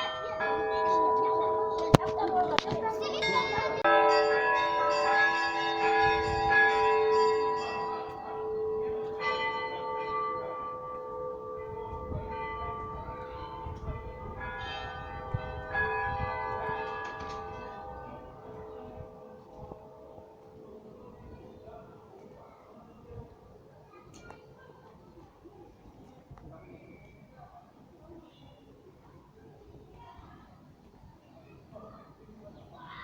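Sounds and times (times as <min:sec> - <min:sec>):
church bells ringing: 0:00.0 - 0:22.8.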